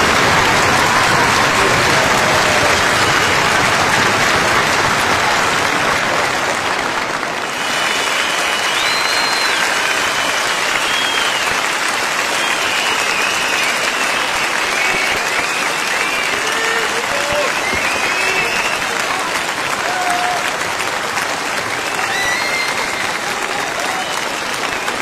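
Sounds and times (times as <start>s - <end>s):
crowd clapping: 0.0s - 25.0s
high whistles: 7.6s - 16.5s, 17.4s - 18.9s.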